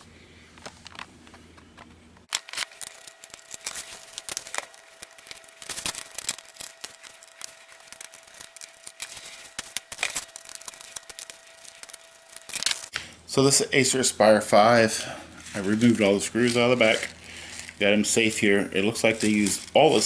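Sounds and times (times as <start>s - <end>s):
screwdriver and screws clicking: 2.3s - 12.9s.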